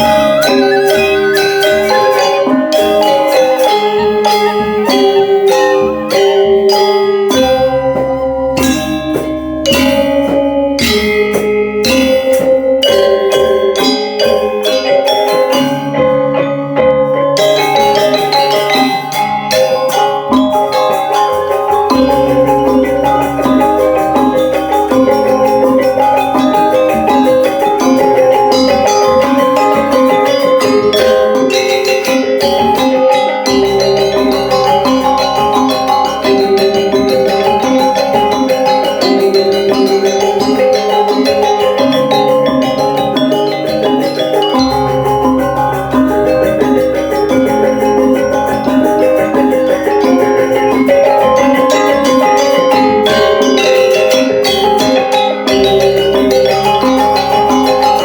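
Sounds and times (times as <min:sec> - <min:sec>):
metallophones ringing rapid notes: 0:00.0 - 0:58.0
deep gong tones: 0:43.9 - 0:50.9.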